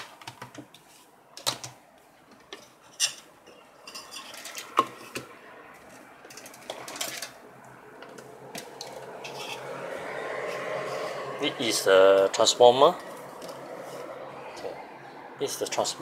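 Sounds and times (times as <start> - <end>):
hard objects clicking and knocking: 0.0 - 0.8, 1.4 - 9.7.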